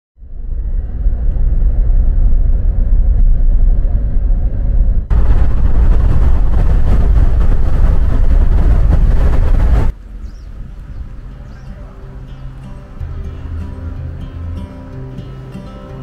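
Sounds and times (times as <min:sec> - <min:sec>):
vehicle driving rumble: 0:00.2 - 0:15.6
road and wind noise: 0:00.2 - 0:16.0
hissy rush: 0:05.1 - 0:10.0.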